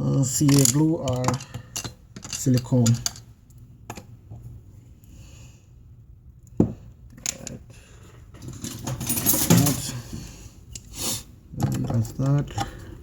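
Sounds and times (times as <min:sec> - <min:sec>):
tools clattering and scraping: 0:08.3 - 0:10.2.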